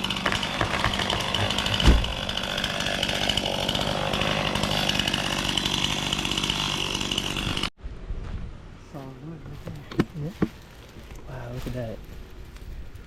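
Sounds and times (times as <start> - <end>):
chainsaw cutting wood: 0.0 - 7.7.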